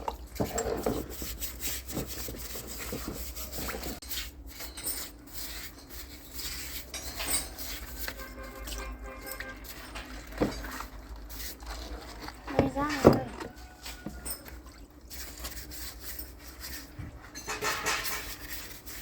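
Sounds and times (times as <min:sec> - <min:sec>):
tools scraping metal parts: 0:00.4 - 0:10.8, 0:12.4 - 0:19.0
metal knocks and clicks: 0:17.4 - 0:18.4.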